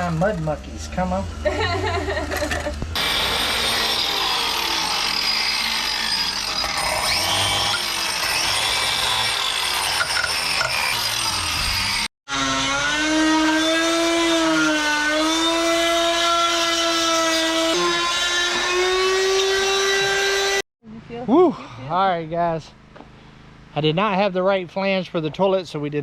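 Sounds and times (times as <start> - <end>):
power tool cutting pipe: 2.3 - 20.6.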